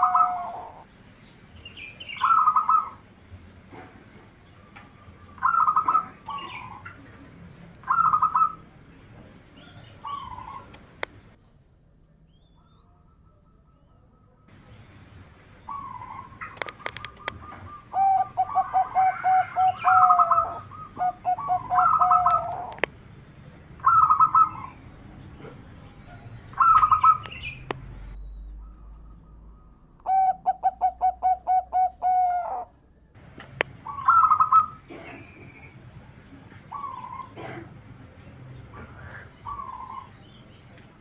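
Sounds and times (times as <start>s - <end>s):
dove cooing: 0.0s - 0.8s, 2.2s - 3.0s, 5.0s - 8.7s, 9.6s - 10.8s, 15.7s - 22.9s, 23.8s - 24.8s, 26.5s - 27.3s, 28.5s - 32.7s, 33.8s - 35.4s.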